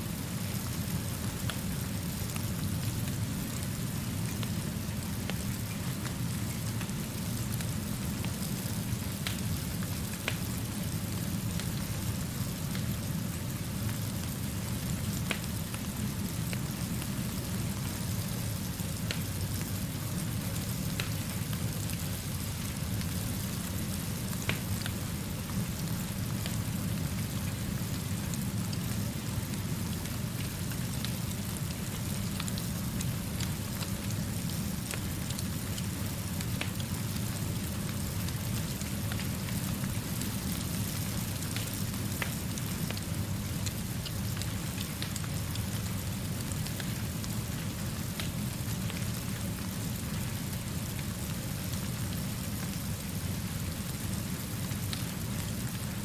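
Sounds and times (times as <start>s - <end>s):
steady rainfall: 0.0s - 56.0s
raindrop ticks: 41.4s - 43.1s, 43.7s - 45.6s.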